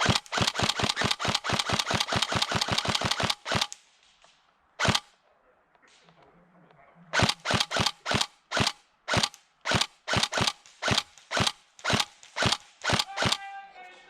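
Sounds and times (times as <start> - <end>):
airsoft gun shots: 0.0 - 3.8, 4.8 - 5.1, 7.2 - 13.5.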